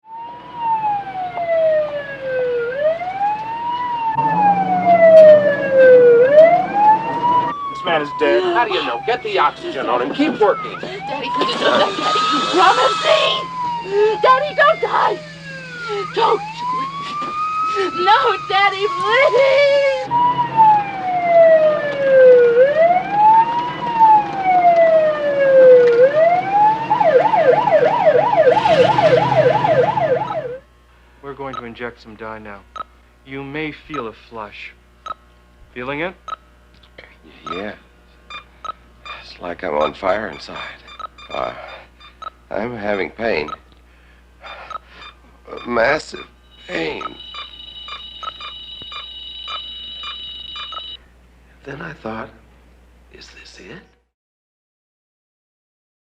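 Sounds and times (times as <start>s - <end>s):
emergency vehicle siren wailing: 0.0s - 30.6s, 45.5s - 51.0s
steady low hum: 0.6s - 54.0s.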